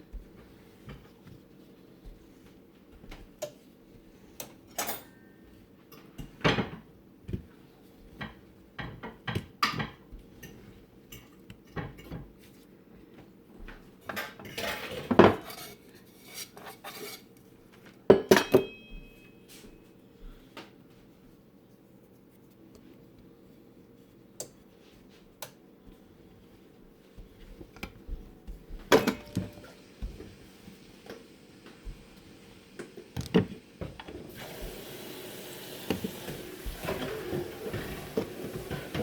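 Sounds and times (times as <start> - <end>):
dishes and utensils clattering: 14.1 - 17.3, 18.1 - 19.0, 28.9 - 29.8, 35.9 - 39.0.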